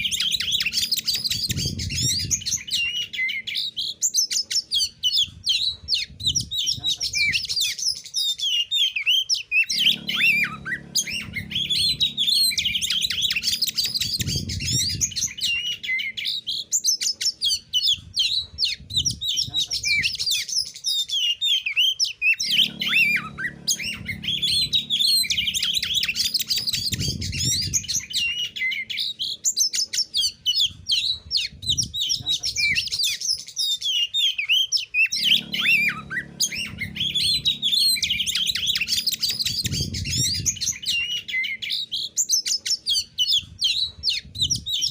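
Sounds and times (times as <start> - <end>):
low hum: 0.0 - 3.6, 9.6 - 16.6, 22.4 - 29.3, 35.1 - 41.8
songbird chattering and whistling: 0.0 - 44.9.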